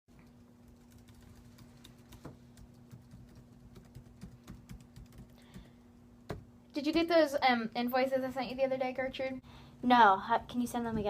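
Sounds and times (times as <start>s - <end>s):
steady low hum: 0.1s - 11.0s
computer keyboard tapping: 0.2s - 5.7s.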